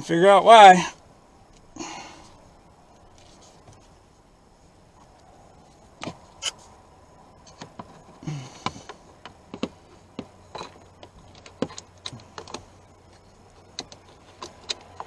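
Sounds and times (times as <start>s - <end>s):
plastic parts clicking and tapping: 8.6s - 15.0s.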